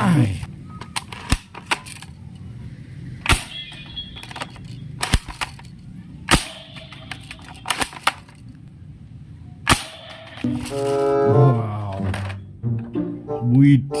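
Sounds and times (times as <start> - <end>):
toy gun cracks: 3.2 - 8.4, 9.7 - 10.8.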